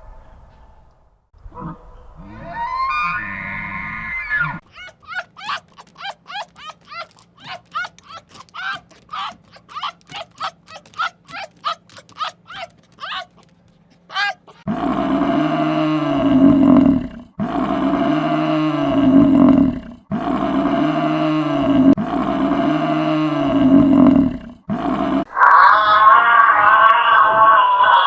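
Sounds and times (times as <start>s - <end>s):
large animal roaring: 1.5s - 4.6s, 14.7s - 28.0s
short high animal calls: 1.5s - 4.6s.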